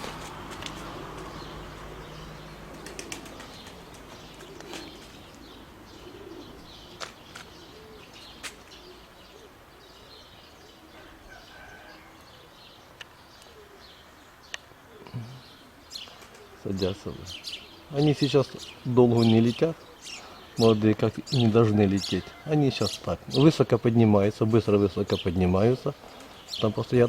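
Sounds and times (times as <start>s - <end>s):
small birds chirping: 0.0s - 27.0s
sharp wing claps: 2.7s - 4.9s
pigeons flapping wings: 2.7s - 5.2s.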